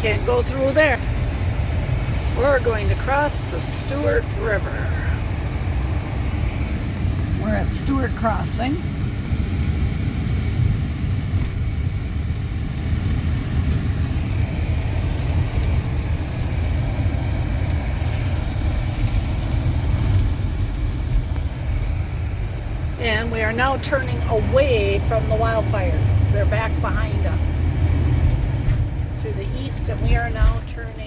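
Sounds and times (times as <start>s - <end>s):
motorhome engine and road noise: 0.0s - 31.0s.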